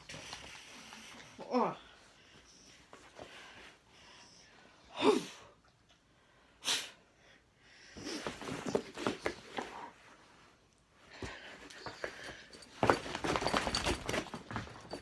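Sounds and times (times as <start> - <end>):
scuffling and small taps: 8.2 - 9.9.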